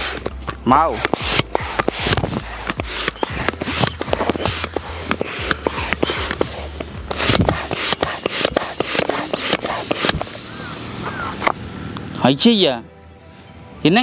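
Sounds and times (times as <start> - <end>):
pump clicking and rubbing: 0.0 - 10.6
hand air pump strokes: 0.0 - 11.6.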